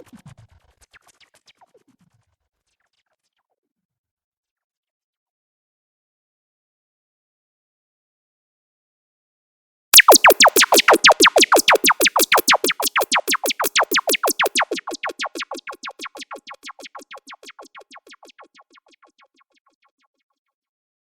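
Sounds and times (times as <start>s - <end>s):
synthesized laser zaps: 10.0s - 19.3s.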